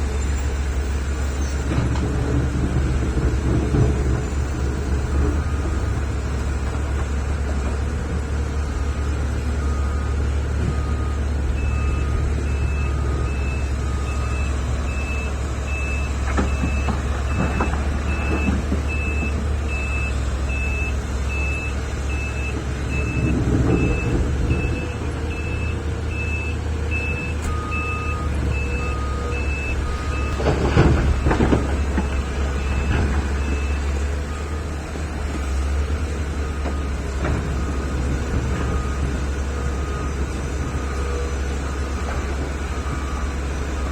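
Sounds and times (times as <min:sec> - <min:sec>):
heavy diesel machinery running: 0:00.0 - 0:43.9
reversing alarm beeping: 0:08.8 - 0:43.9.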